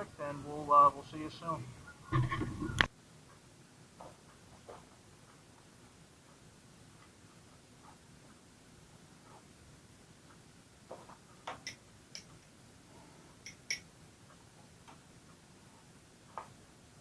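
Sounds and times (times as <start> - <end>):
faint irregular clicks: 10.2 - 12.6, 13.3 - 16.6.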